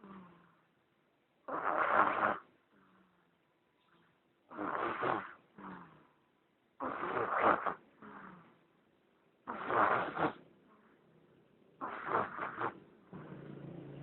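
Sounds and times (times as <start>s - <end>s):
person snoring: 4.5s - 6.1s, 11.8s - 13.4s
soft breath: 7.9s - 8.7s.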